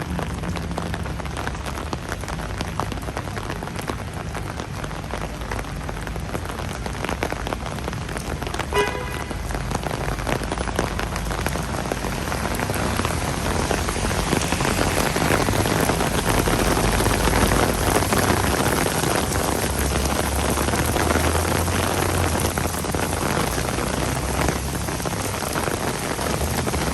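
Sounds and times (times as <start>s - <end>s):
steady rain falling: 0.0s - 26.9s.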